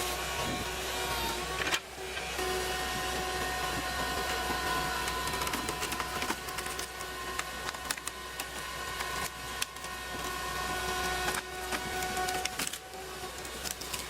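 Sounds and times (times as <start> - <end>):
machine whining: 0.0 - 14.0
wood cracking and splintering: 3.2 - 14.0.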